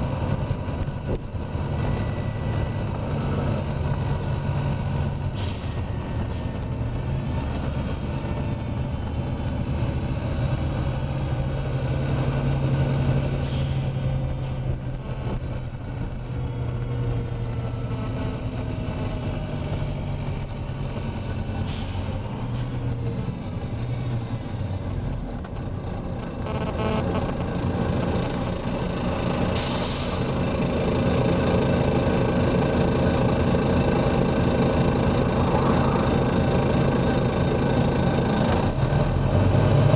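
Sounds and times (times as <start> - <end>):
bus engine running: 0.0 - 39.9.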